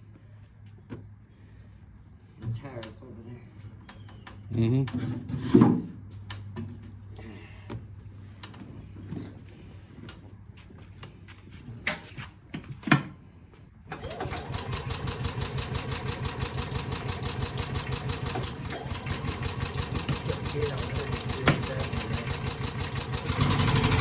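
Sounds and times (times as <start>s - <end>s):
golf cart engine putter and whine: 13.9s - 24.0s.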